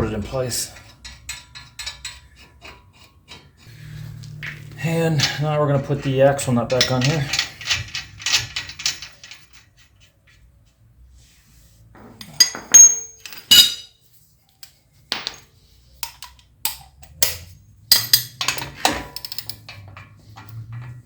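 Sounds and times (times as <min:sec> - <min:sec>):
metal tools clinking and knocking: 0:05.1 - 0:10.4, 0:12.0 - 0:14.0, 0:14.6 - 0:21.0.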